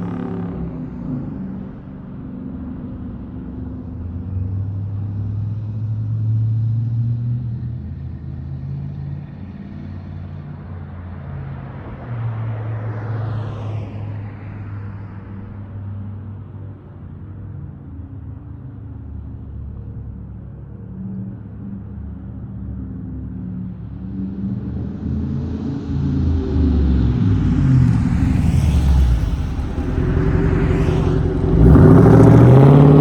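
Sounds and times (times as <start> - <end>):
car engine deep rumble: 14.1 - 33.0
whoosh falling in pitch: 27.1 - 33.0.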